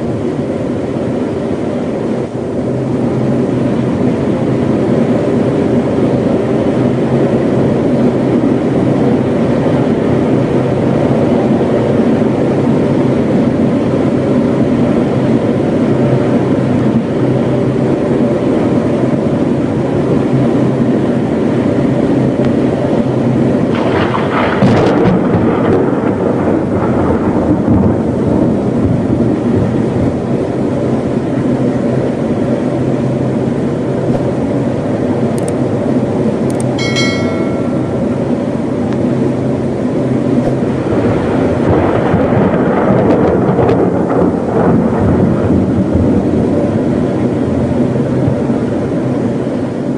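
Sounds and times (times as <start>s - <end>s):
heavy rain pouring: 0.0s - 36.8s, 37.8s - 49.9s
thunder crack and rumble: 20.0s - 34.9s, 37.7s - 49.4s.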